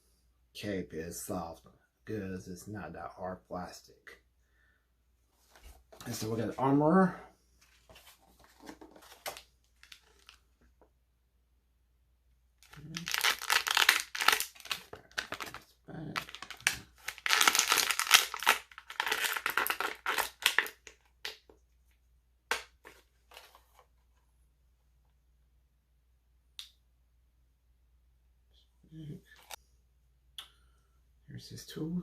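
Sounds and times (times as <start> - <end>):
packaging crinkling: 7.9 - 10.5, 12.6 - 21.0.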